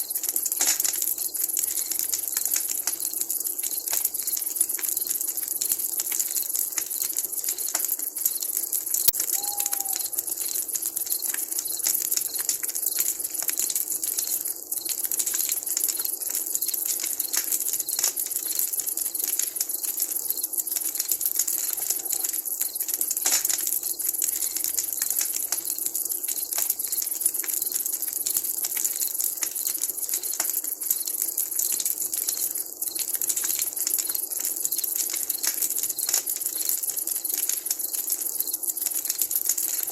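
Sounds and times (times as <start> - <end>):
campfire crackling and popping: 0.0 - 39.9
brief falling call: 9.3 - 10.2.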